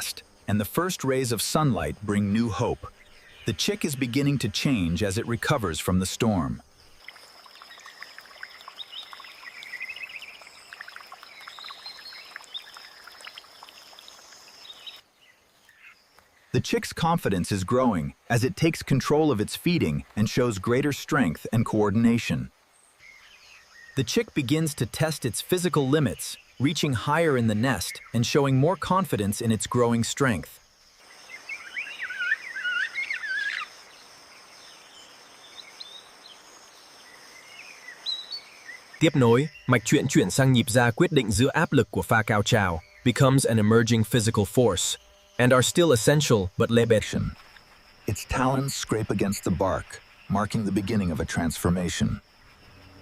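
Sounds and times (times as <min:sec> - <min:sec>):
high insect drone: 0:00.0 - 0:20.2, 0:29.5 - 0:53.0
bird chirping: 0:00.0 - 0:53.0
faint steady hiss: 0:00.0 - 0:53.0
warbling calls: 0:06.9 - 0:15.0, 0:31.3 - 0:33.8.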